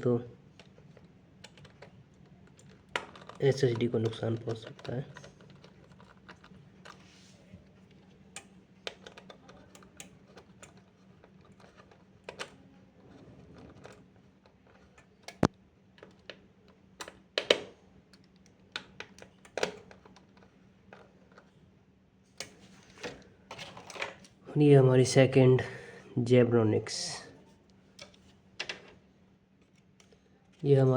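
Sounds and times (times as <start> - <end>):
small clicks and taps: 14.7 - 21.5.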